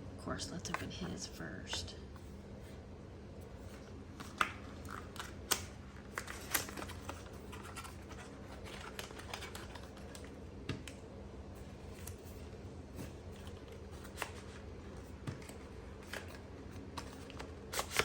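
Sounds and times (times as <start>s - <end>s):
packaging scratching and rustling: 3.5s - 10.4s, 11.6s - 18.0s
packaging clicks and snaps: 4.2s - 11.0s, 15.3s - 18.0s.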